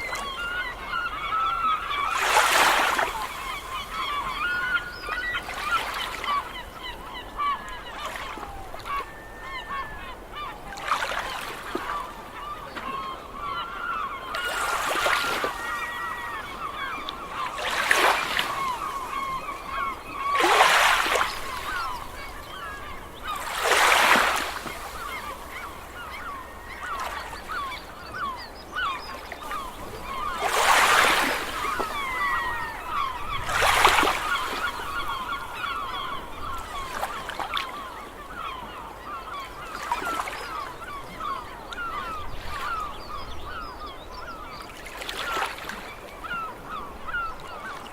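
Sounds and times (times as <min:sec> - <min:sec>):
gulls calling: 0:00.0 - 0:47.9
waves washing in: 0:13.0 - 0:26.4, 0:29.4 - 0:37.5.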